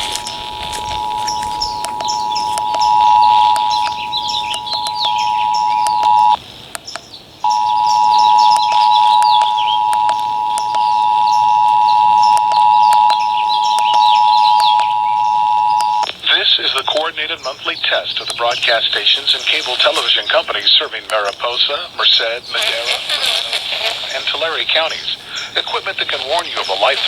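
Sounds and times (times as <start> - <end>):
two-tone alert signal: 0.0 - 6.4, 7.5 - 16.1
clicks: 0.0 - 21.9
birds chirping: 0.0 - 27.0.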